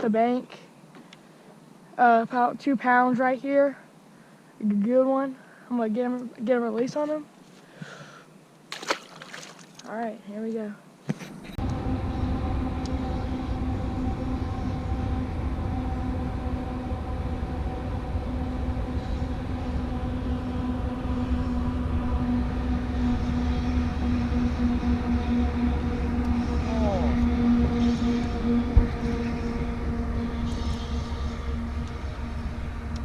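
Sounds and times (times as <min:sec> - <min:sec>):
small boat motor humming: 0:11.4 - 0:33.0.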